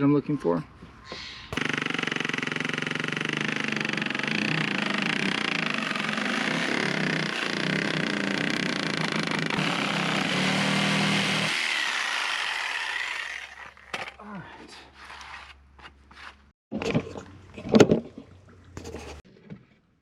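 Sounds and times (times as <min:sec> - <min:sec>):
power saw cutting wood: 0:01.6 - 0:14.1.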